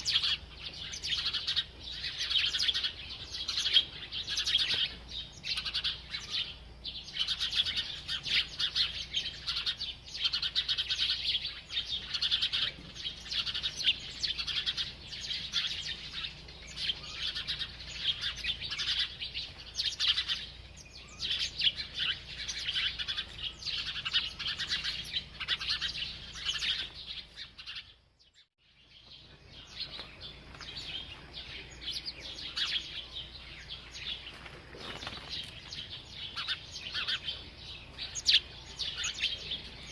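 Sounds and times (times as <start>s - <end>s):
sparrows chirping: 0.0s - 39.9s.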